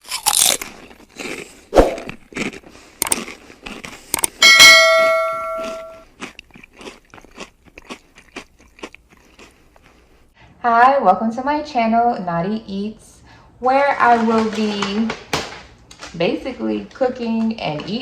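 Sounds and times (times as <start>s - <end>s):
bell-like ding: 4.4s - 6.0s.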